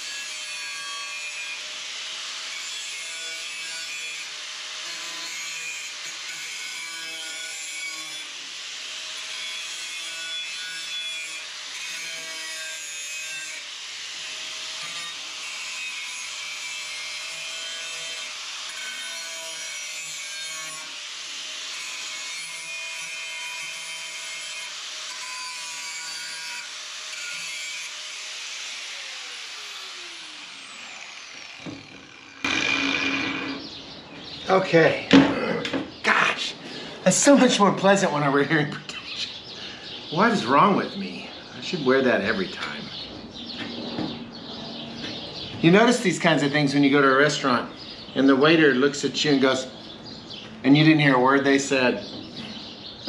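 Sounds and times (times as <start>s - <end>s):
power tool cutting sheet steel: 0.0s - 33.8s
motor winding down: 29.0s - 33.7s.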